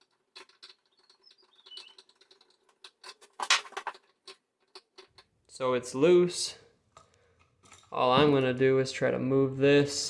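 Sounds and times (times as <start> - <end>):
clicks taps and scrapes: 0.0 - 5.4.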